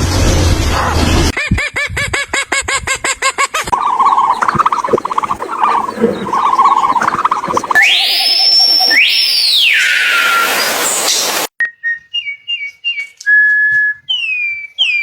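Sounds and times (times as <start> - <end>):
animal chattering: 3.7 - 10.0
animal calls: 3.7 - 11.5
rising animal whistle: 3.8 - 15.0.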